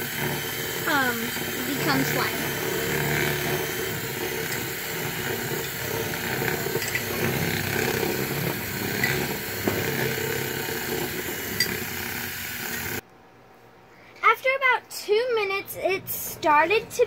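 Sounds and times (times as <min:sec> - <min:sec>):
power drill mixing in a bowl: 0:00.0 - 0:13.0.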